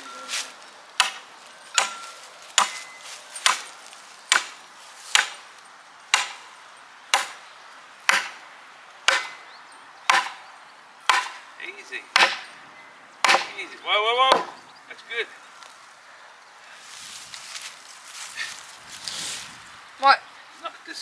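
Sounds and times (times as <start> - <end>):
hammer blows on wood: 1.0 - 5.5, 6.1 - 6.5, 7.1 - 7.4, 8.1 - 8.5, 9.1 - 9.5, 10.1 - 10.5, 11.1 - 14.7.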